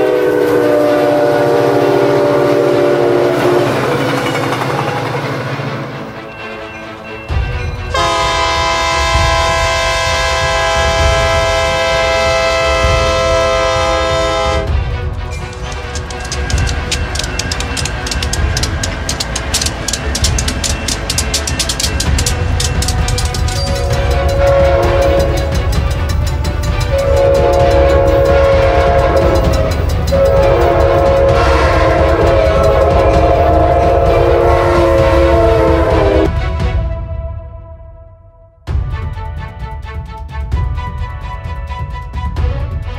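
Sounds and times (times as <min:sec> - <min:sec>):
locomotive air horn: 0:00.0 - 0:04.1, 0:07.9 - 0:19.7, 0:20.4 - 0:38.1
train rumbling: 0:00.0 - 0:37.3, 0:38.7 - 0:42.9.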